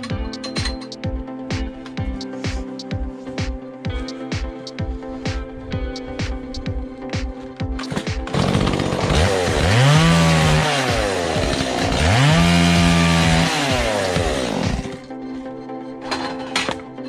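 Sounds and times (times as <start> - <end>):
chainsaw revving: 7.8 - 15.0.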